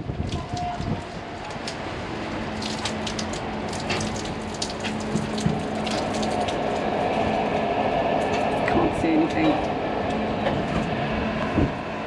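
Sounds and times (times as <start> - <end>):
rain drops ticking: 0.0 - 7.6.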